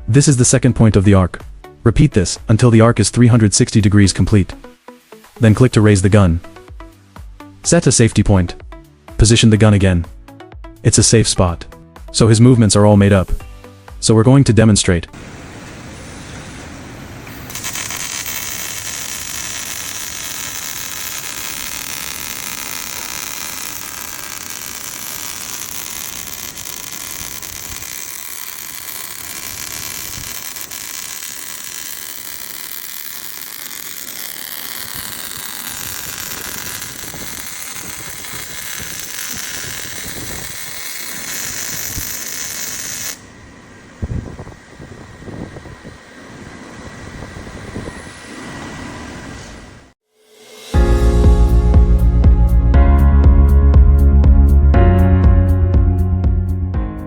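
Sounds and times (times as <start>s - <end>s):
welding arc crackling hiss: 17.2s - 43.3s.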